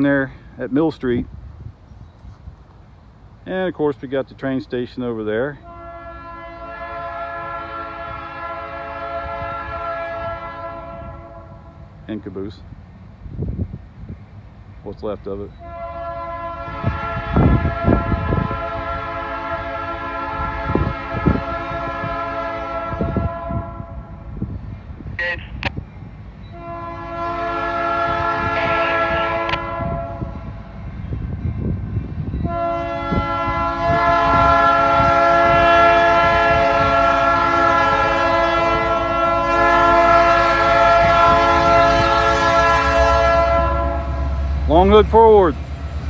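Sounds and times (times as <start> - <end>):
locomotive air horn blasts: 5.6 - 11.9, 15.6 - 24.4, 26.5 - 31.7, 32.4 - 45.7.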